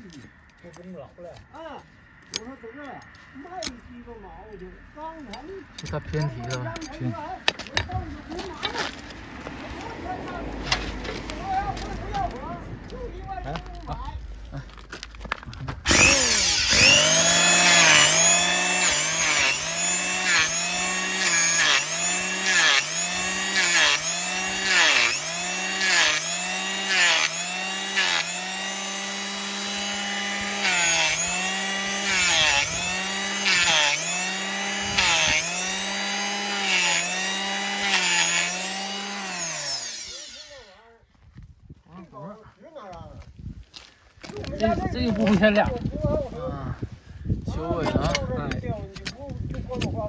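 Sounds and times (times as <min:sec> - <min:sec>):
power tool grinding hoof: 0:15.8 - 0:40.8.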